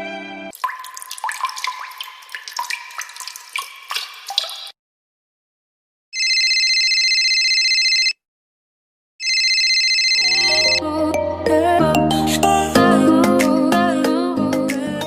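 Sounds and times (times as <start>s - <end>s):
plinking water drips: 0.5s - 4.8s
warbling phone ringtone: 6.2s - 8.2s, 9.2s - 11.0s.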